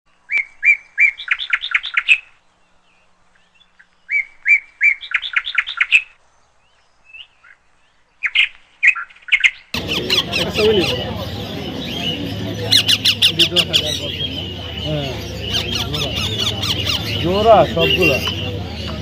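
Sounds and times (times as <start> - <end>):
parrot chirping: 9.8 - 18.9.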